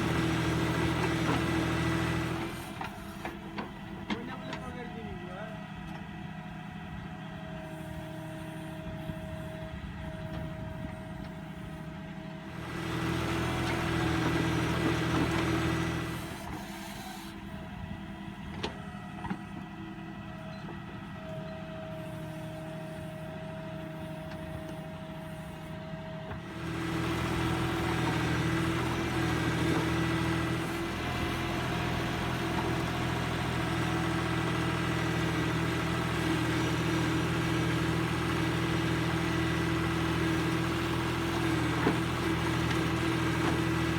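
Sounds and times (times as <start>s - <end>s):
diesel engine revving: 0.0s - 2.9s, 12.4s - 16.8s, 26.3s - 43.9s.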